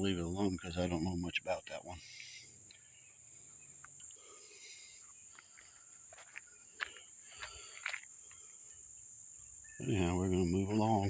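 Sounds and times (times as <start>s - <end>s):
high-pitched insect chorus: 0.0s - 11.0s.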